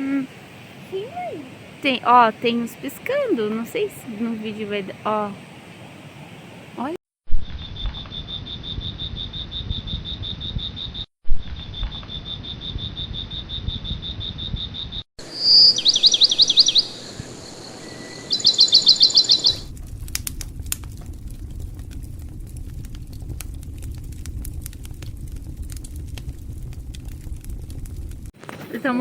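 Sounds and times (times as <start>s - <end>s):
campfire crackling: 0.4s - 6.9s, 15.2s - 29.0s
night insects trilling: 7.7s - 19.7s
rapid high chirps: 15.2s - 19.7s.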